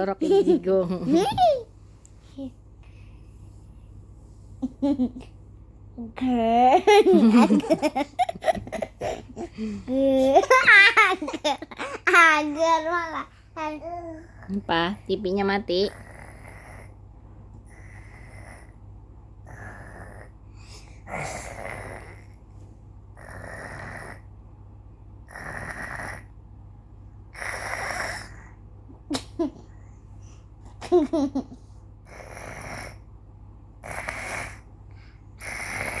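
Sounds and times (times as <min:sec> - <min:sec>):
rasping snoring: 0:15.8 - 0:17.0, 0:17.7 - 0:18.8, 0:19.4 - 0:20.4, 0:21.1 - 0:22.4, 0:23.2 - 0:24.3, 0:25.2 - 0:26.3, 0:27.3 - 0:28.6, 0:32.1 - 0:33.1, 0:35.4 - 0:36.0.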